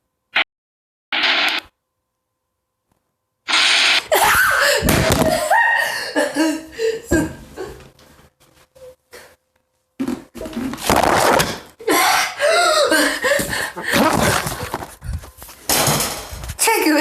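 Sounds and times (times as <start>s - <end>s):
burst of noise: 3.5s - 5.4s.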